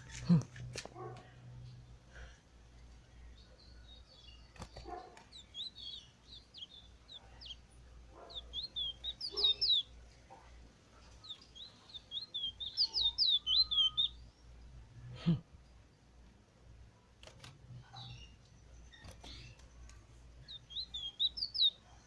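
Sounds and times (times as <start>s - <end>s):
bird chirping rapidly: 3.3s - 10.0s, 11.1s - 14.8s, 17.8s - 22.0s.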